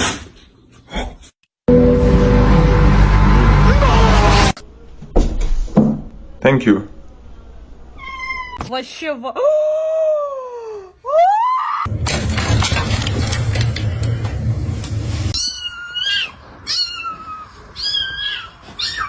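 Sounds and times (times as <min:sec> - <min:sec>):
loud rumbling noise: 0:01.7 - 0:04.6, 0:11.9 - 0:15.3
cats meowing: 0:08.0 - 0:08.7, 0:15.4 - 0:19.0
high-pitched mews: 0:15.3 - 0:19.0.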